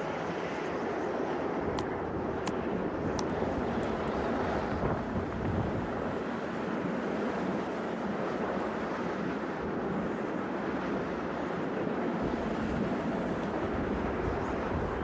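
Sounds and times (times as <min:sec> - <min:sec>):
blizzard wind buffeting microphone: 0:01.4 - 0:06.2, 0:10.7 - 0:15.0.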